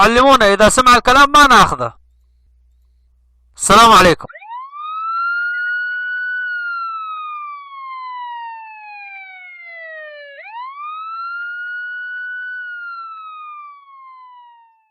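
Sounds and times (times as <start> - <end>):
police siren wailing: 4.3 - 14.9.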